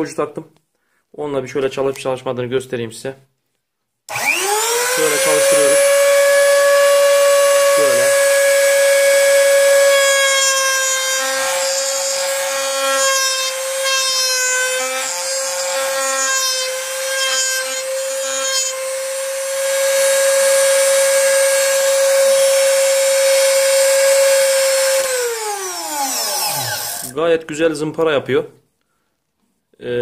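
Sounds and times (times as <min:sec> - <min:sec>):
rotary tool high whine: 0:04.1 - 0:13.9, 0:16.9 - 0:27.1
sanding bit rubbing and scraping: 0:21.6 - 0:27.1.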